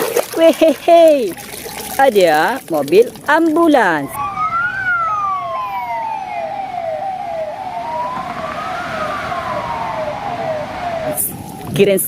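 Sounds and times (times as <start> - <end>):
fast siren: 3.8 - 11.9
slow wailing siren: 4.0 - 11.8.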